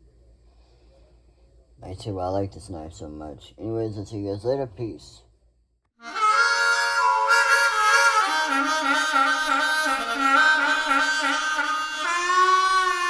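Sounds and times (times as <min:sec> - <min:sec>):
harmonica melody: 0:06.0 - 0:13.0.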